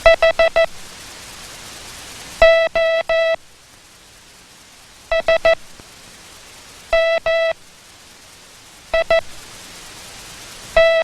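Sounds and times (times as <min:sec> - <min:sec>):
morse code buzzy tone: 0:00.0 - 0:00.7, 0:02.4 - 0:03.4, 0:05.1 - 0:05.6, 0:06.9 - 0:07.6, 0:09.0 - 0:09.3, 0:10.8 - 0:11.0.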